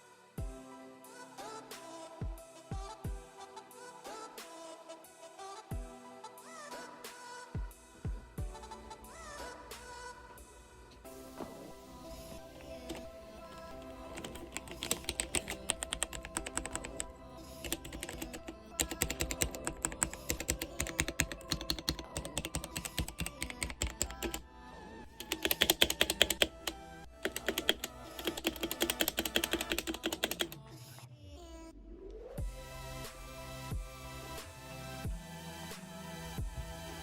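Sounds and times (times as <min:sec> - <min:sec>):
mechanical keyboard typing: 0:12.2 - 0:24.4, 0:25.1 - 0:30.6.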